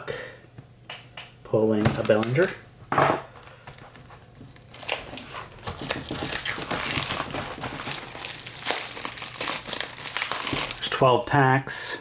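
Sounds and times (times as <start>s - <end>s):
plastic wrapping crinkling: 1.9s - 2.6s, 3.4s - 11.3s.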